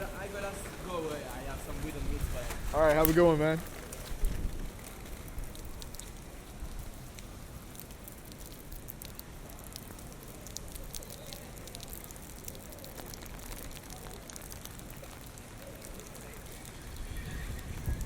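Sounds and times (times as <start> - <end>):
heavy rain falling: 0.0 - 18.0
water drips and splashes: 0.0 - 18.0
strong wind rumble: 3.7 - 5.9, 16.8 - 18.0.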